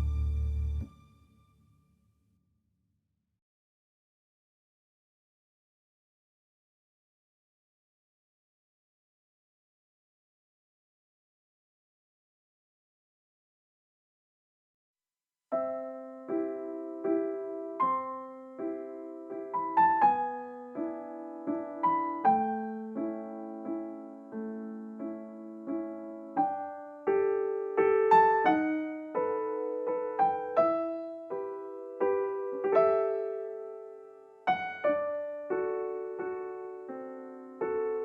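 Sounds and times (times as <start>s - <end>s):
gentle solo piano: 15.5s - 38.0s.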